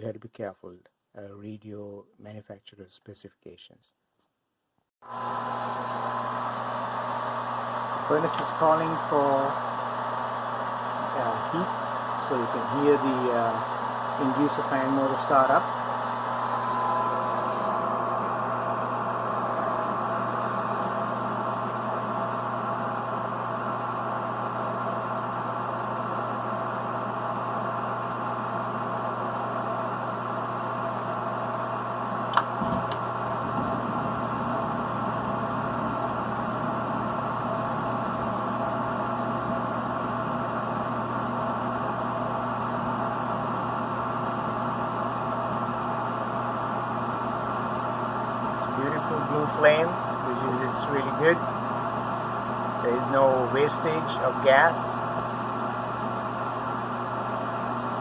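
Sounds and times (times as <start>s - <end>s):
furnace inducer fan humming: 5.0s - 58.0s
sharp click: 32.3s - 33.0s.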